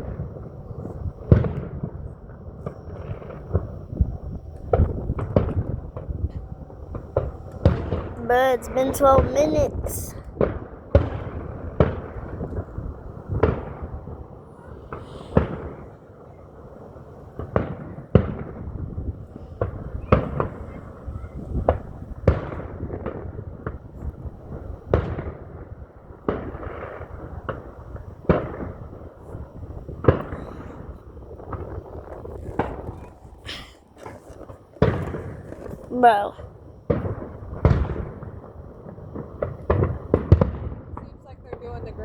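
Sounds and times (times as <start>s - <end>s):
fireworks booming: 34.8s - 41.9s.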